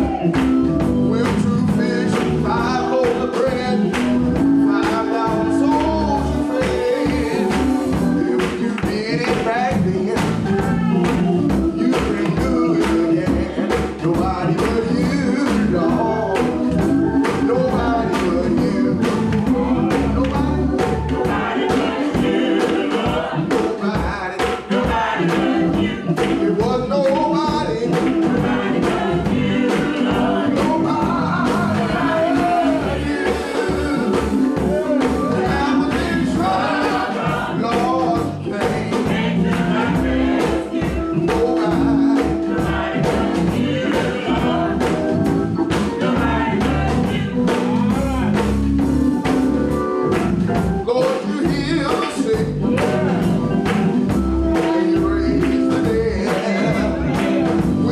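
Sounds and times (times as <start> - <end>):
gospel choir singing: 0.0 - 57.9
steady drum beat: 0.0 - 57.9.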